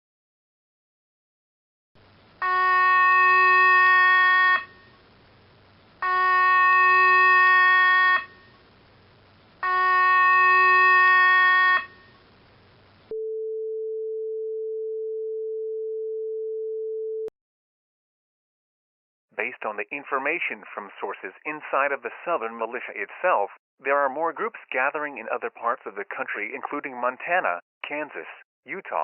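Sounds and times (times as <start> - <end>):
emergency alert tone bursts: 6.0 - 8.5, 9.6 - 12.1.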